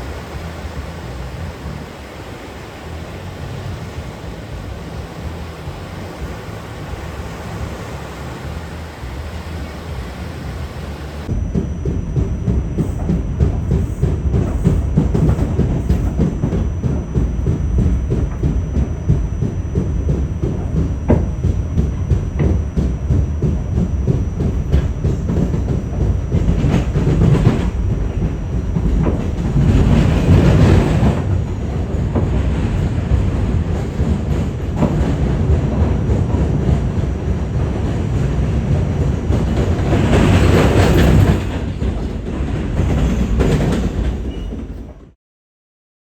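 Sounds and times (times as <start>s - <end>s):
train rumbling on rails: 0.0s - 45.2s
train wheel clicks: 11.2s - 45.1s.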